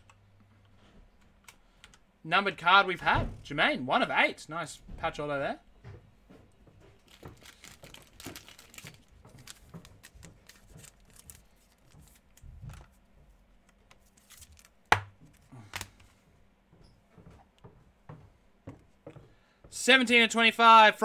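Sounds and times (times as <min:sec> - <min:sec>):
cards and packaging rustling: 0:07.0 - 0:16.1.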